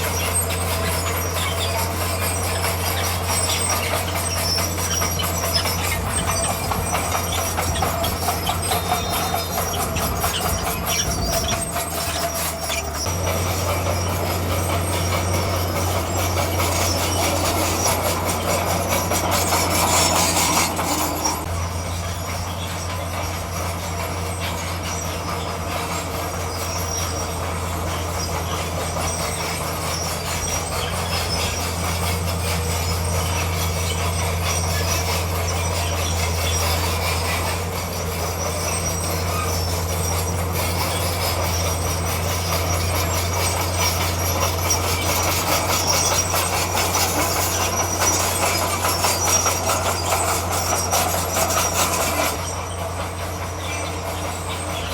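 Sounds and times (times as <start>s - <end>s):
bulldozer diesel engine drone: 0.0s - 54.9s
crawler tracks clattering and squealing: 0.0s - 54.9s.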